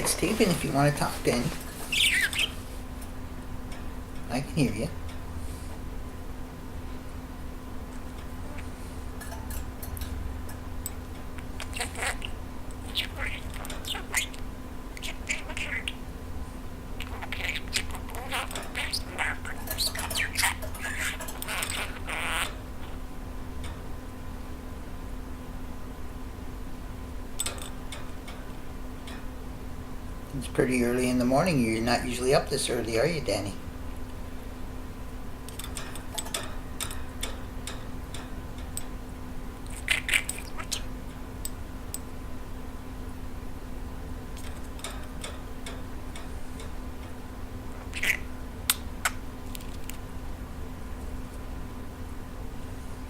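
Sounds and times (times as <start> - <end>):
low room hum: 0.0 - 53.0
budgerigar chattering and chirping: 1.9 - 2.6, 11.4 - 16.0, 17.0 - 22.6, 39.7 - 40.9, 47.8 - 49.2.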